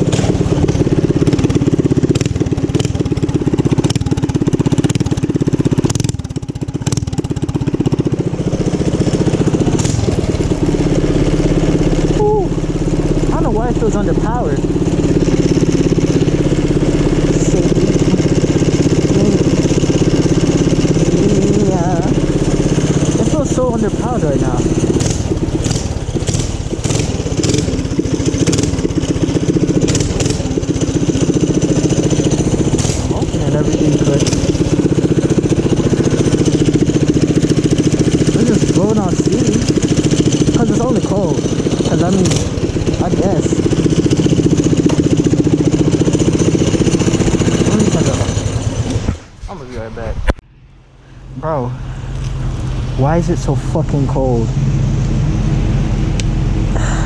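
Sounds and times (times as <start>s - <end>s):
small motorbike engine running: 0.0s - 49.4s, 51.4s - 57.0s
person talking: 12.1s - 12.6s, 13.2s - 14.7s, 17.3s - 18.4s, 19.0s - 19.6s, 21.0s - 22.2s, 23.1s - 24.7s, 33.0s - 34.5s, 53.0s - 54.6s.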